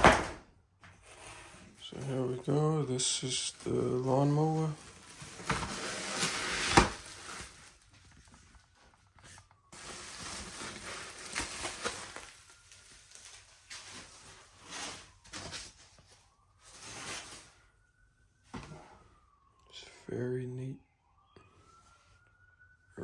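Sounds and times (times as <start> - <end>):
plastic and cardboard rustling: 0.0 - 17.8.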